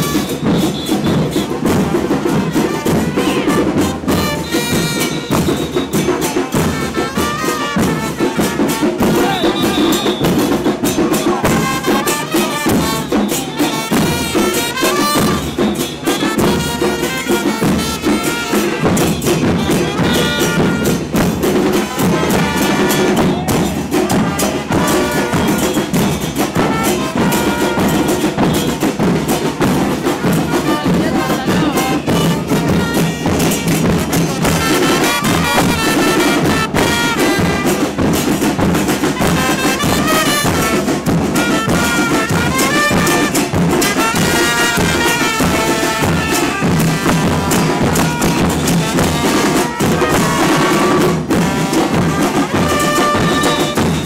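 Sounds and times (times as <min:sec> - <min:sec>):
carnival band music: 0:00.0 - 0:54.0
loud drumming and percussion: 0:00.0 - 0:54.0.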